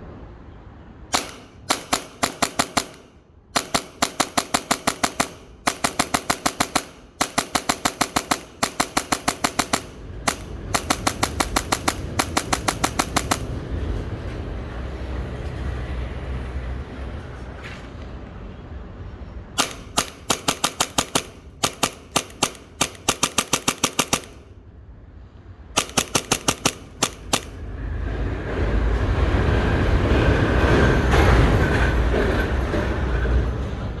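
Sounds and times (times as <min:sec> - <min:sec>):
steady rumbling noise: 0:00.0 - 0:34.0
airsoft pistol shots cracking: 0:01.1 - 0:13.5, 0:19.6 - 0:24.5, 0:25.8 - 0:27.6.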